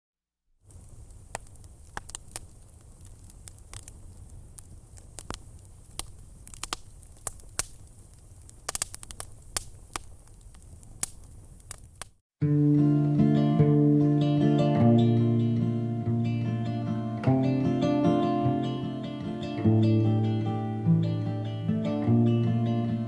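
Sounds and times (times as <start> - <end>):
crackling clicks: 0.6 - 12.2
guitar music: 12.4 - 23.0.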